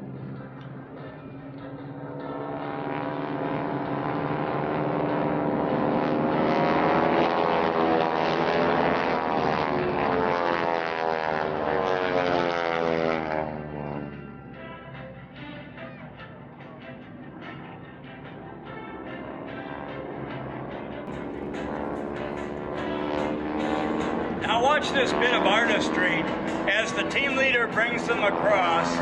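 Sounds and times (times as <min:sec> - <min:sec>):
propeller aircraft engine passing by: 0:00.0 - 0:29.0.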